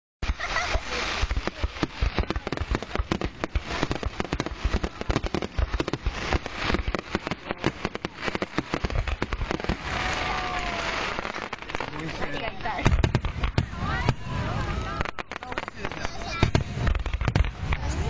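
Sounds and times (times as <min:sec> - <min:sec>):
fireworks bangs and crackling: 0:00.2 - 0:18.0.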